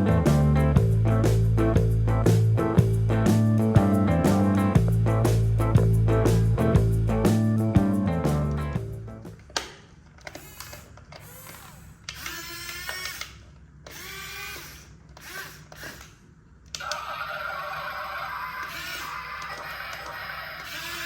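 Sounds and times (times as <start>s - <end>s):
small electric motors whining: 10.3s - 16.2s, 18.2s - 21.0s
clicks: 15.0s - 17.1s.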